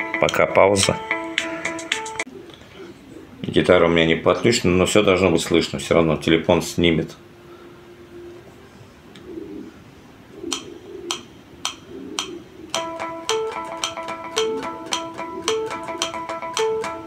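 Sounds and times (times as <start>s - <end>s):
guitar harmonics ringing: 0.0s - 2.2s, 10.5s - 17.0s
guitar pick clicks: 10.5s - 17.0s.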